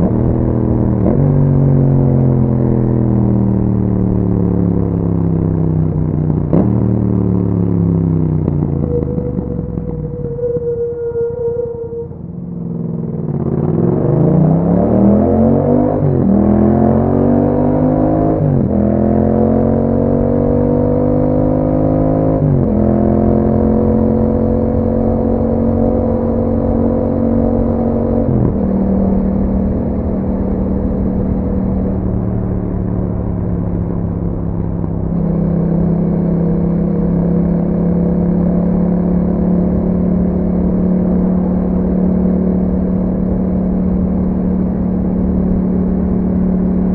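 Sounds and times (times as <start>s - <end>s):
motorcycle engine accelerating: 0.0s - 46.9s.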